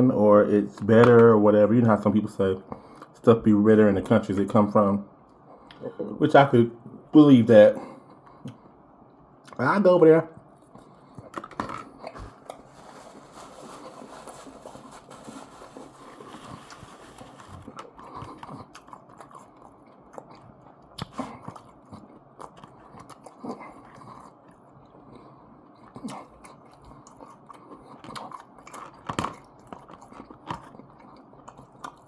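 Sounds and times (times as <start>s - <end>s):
person chewing food: 2.7s - 3.2s, 7.8s - 8.8s, 10.4s - 32.0s.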